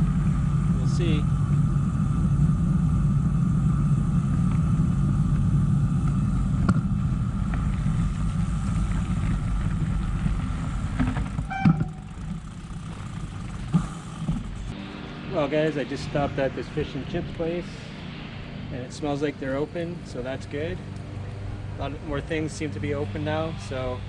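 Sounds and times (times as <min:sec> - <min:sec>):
bicycle tyre noise: 0:00.0 - 0:14.8
wind buffeting microphone: 0:00.0 - 0:14.8.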